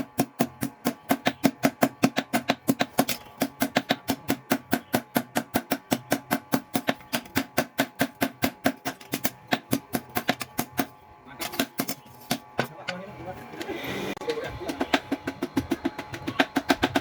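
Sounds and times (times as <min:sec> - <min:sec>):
power hammer pounding steel: 0:00.0 - 0:10.9, 0:14.6 - 0:17.0.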